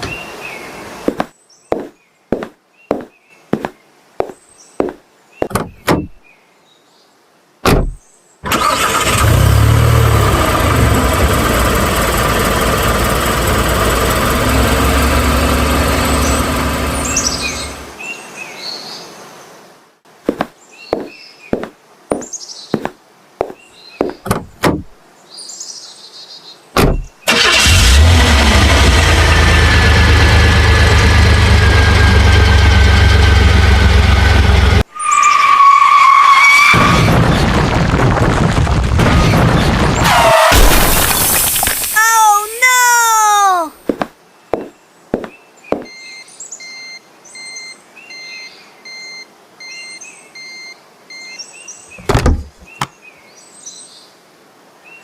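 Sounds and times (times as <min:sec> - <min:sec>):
car engine running: 0:09.0 - 0:17.8, 0:26.9 - 0:34.8.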